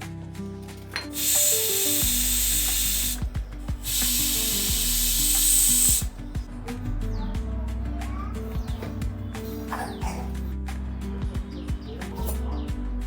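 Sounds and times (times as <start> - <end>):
soft background music: 0.0 - 13.0
loud even hiss: 1.2 - 6.2.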